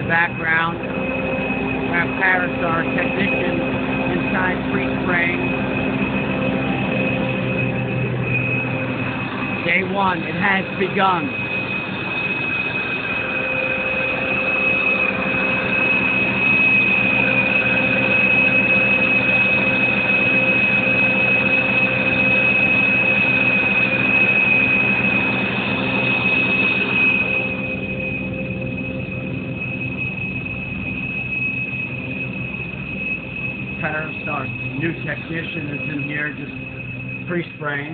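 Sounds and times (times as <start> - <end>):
high-pitched machine whine: 0.0 - 37.9
low engine hum: 0.0 - 37.9
rushing noise: 0.0 - 37.9.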